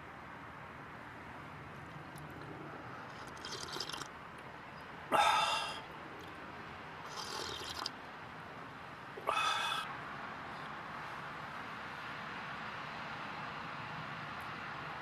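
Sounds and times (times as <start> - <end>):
faint steady background noise: 0.0 - 15.0
eating mouth sounds: 3.1 - 4.1, 7.1 - 7.9.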